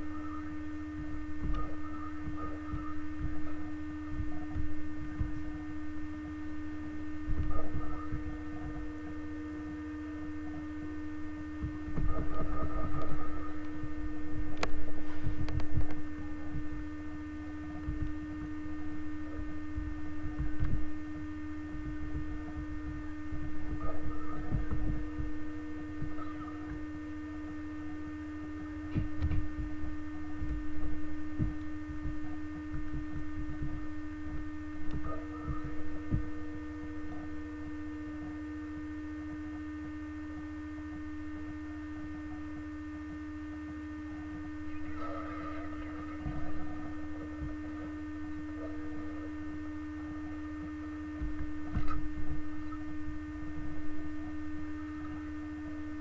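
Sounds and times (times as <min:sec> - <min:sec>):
electrical hum: 0:00.0 - 0:56.0
dull low thumps: 0:00.9 - 0:09.2, 0:11.6 - 0:17.0, 0:17.7 - 0:26.9, 0:28.8 - 0:37.3.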